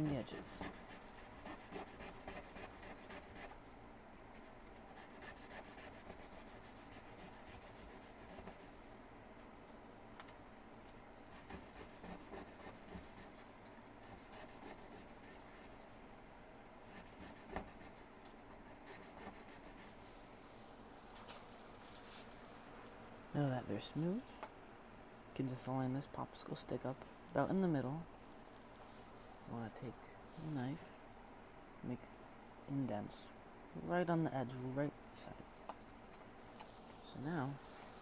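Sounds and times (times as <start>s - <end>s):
sandpaper scratching on wood: 0.0s - 3.6s.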